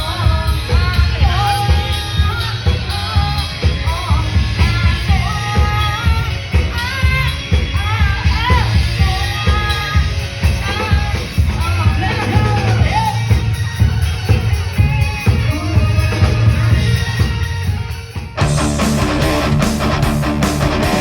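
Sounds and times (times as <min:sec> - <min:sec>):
live band music: 0:00.0 - 0:21.0
heavy fast bass beat: 0:18.4 - 0:21.0.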